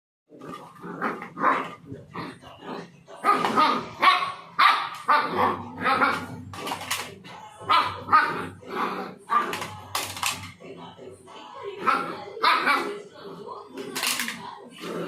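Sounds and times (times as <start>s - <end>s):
dog barking: 3.2s - 6.3s.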